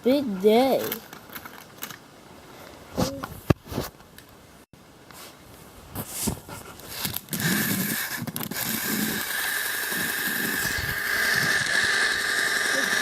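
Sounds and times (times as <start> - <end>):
toy motor clicks: 7.0 - 13.0
toy train motor whining: 7.0 - 13.0.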